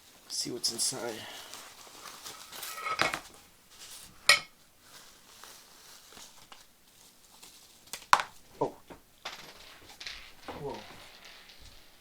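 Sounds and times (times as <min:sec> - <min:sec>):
package rustling: 0:00.0 - 0:09.1
small clinks: 0:08.1 - 0:12.0.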